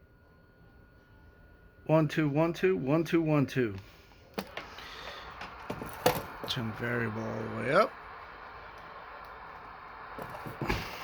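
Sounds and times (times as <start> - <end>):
background hiss: 3.8 - 11.0.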